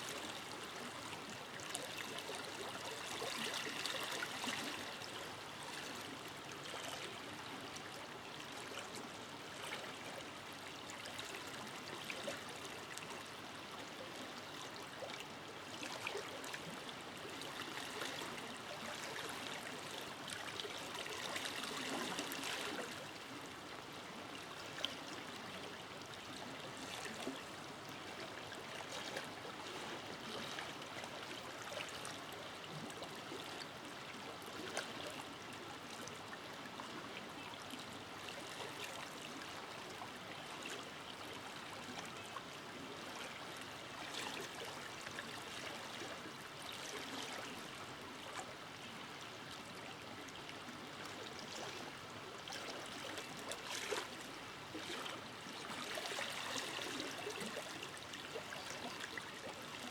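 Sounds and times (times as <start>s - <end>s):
small water splashes: 52.5s - 59.9s.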